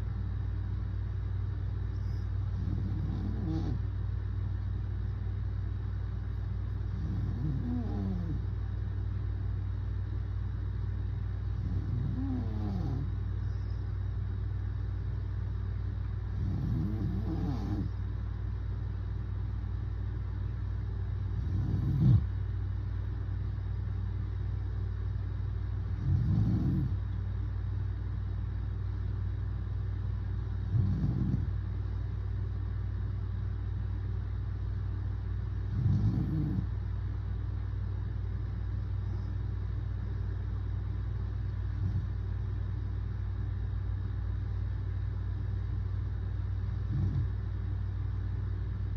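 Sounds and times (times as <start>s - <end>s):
steady low hum: 0.0s - 48.9s
man snoring: 2.6s - 3.8s, 6.9s - 8.4s, 11.6s - 13.1s, 16.4s - 17.9s, 21.4s - 22.3s, 26.0s - 27.0s, 30.7s - 31.4s, 35.7s - 36.7s.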